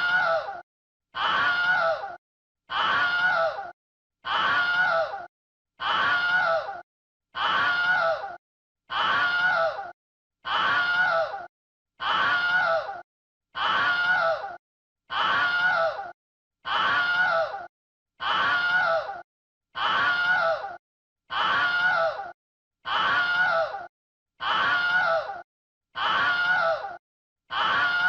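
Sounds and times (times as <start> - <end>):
person screaming: 0.0 - 0.6, 1.2 - 6.8, 7.4 - 13.0, 13.6 - 19.2, 19.8 - 25.4, 26.0 - 28.0.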